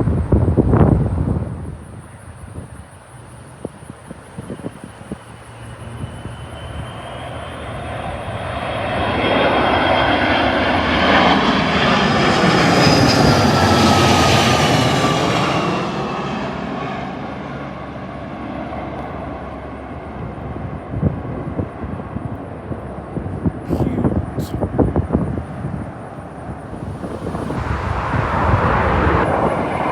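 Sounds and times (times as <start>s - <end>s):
wind buffeting microphone: 0.0s - 7.1s, 20.1s - 29.9s
jet airliner flying overhead: 0.0s - 29.9s.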